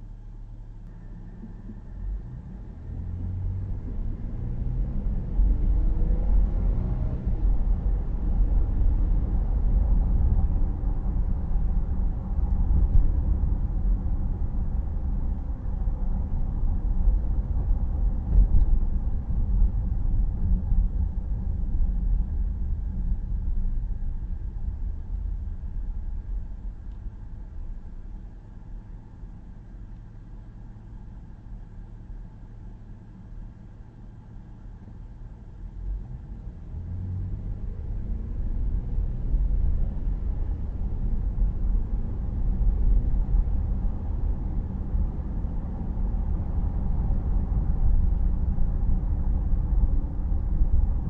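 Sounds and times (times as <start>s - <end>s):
road noise: 0.0s - 51.0s
car engine accelerating: 0.6s - 51.0s.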